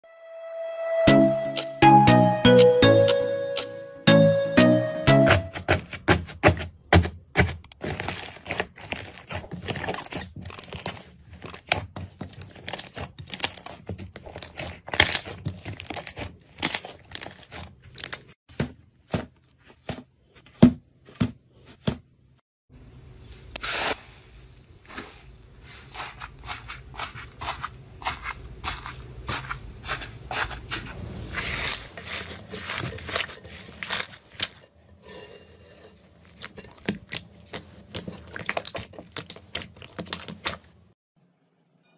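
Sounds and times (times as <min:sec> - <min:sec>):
slime squeezed crackling: 0:37.0 - 0:40.6.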